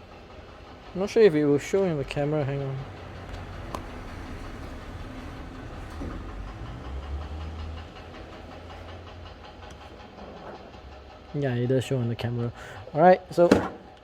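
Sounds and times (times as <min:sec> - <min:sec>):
low engine rumble: 0:00.0 - 0:13.1.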